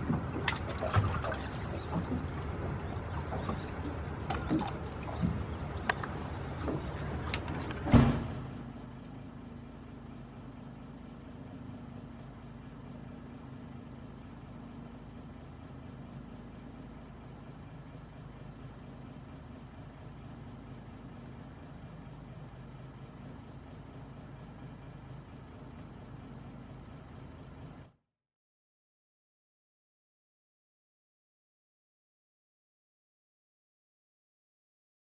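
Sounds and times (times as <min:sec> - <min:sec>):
boat engine running: 0:00.0 - 0:27.9.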